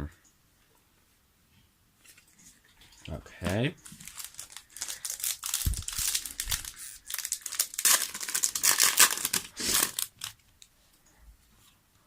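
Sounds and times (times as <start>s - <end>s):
foil wrapper crinkling and tearing: 3.8s - 10.4s.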